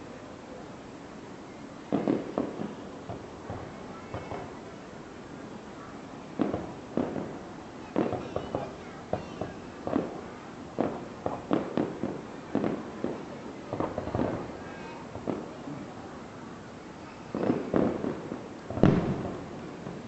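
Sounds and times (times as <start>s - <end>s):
fireworks bangs: 1.9s - 4.7s, 6.3s - 16.0s, 17.0s - 20.0s.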